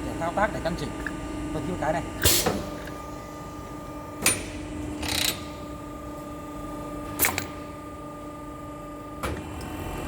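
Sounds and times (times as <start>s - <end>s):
machine humming: 0.0s - 10.0s.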